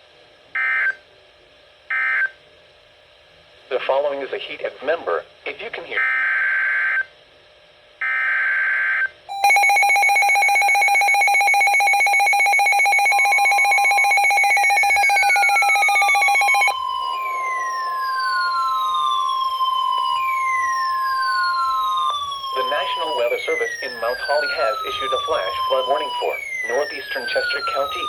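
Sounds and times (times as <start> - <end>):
pulsing two-tone alert signal: 9.3 - 28.0
steady alert tone: 9.3 - 28.0
warbling data burst: 11.1 - 28.0
falling whistle-like sweeps: 16.7 - 23.4.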